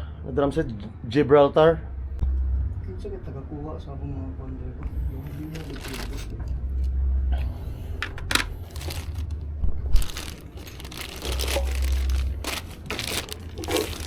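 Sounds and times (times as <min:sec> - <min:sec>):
low handling rumble: 0:01.8 - 0:14.0
packaging crinkling and tearing: 0:05.4 - 0:06.5, 0:08.0 - 0:14.0.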